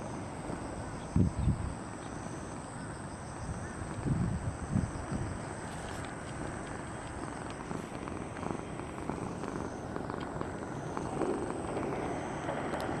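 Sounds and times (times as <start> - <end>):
cat purring: 5.2 - 13.0.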